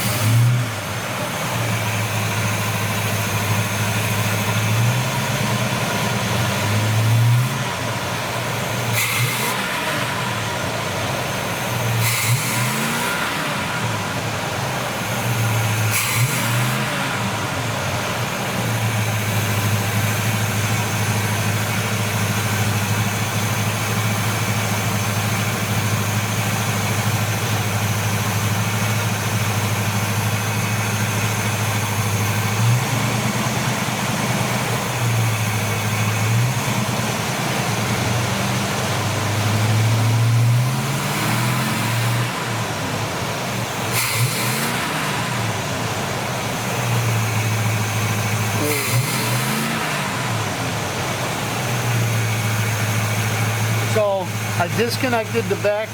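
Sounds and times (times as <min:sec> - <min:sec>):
car engine idling and revving: 0:00.0 - 0:55.9.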